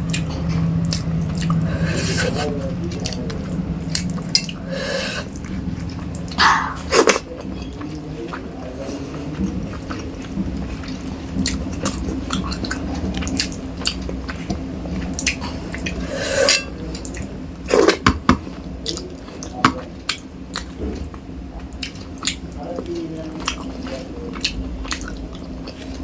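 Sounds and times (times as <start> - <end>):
wet chewing and mouth clicks: 0.0 - 8.6, 9.3 - 18.0, 18.8 - 26.0
dishes clinking: 16.3 - 16.8.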